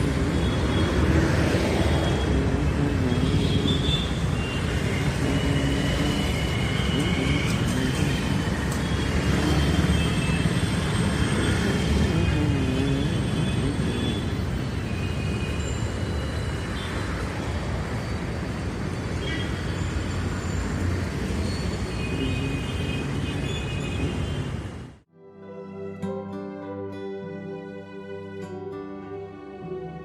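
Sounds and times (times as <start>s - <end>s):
street traffic rumble: 0.0s - 25.1s
soft music: 25.1s - 30.0s.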